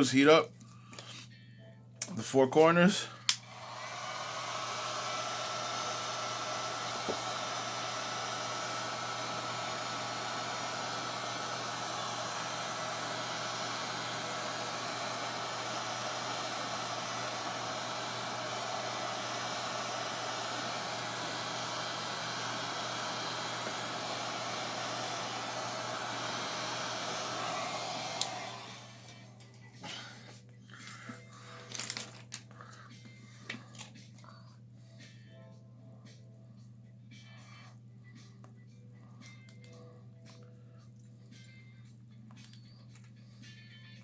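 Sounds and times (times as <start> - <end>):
hot-air blower running: 2.1 - 34.4.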